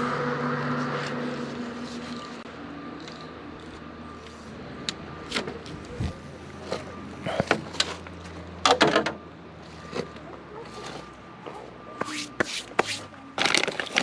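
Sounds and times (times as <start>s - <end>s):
truck engine hum: 0.0s - 14.0s
clicks and rustling handling: 12.8s - 14.0s.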